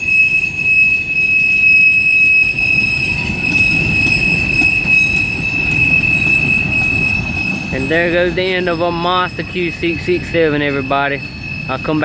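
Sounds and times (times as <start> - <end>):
high-pitched wheel squeal: 0.0 - 12.0
train wheels rumbling on rails: 0.0 - 12.0.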